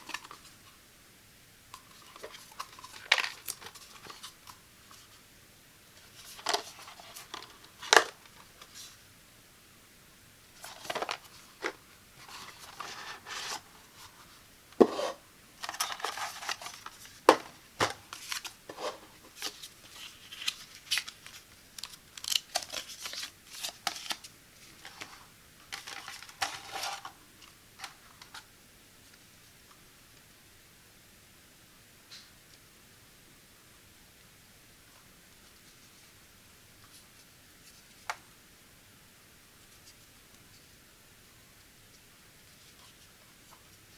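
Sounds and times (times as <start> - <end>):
cardboard and plastic tearing: 15.6 - 24.3.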